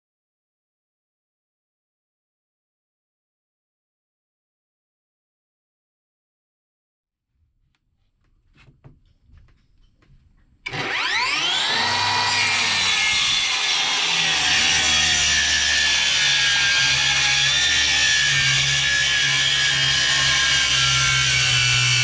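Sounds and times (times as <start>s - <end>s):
faint taps: 8.2s - 10.5s
power tool motor whining: 10.7s - 22.0s.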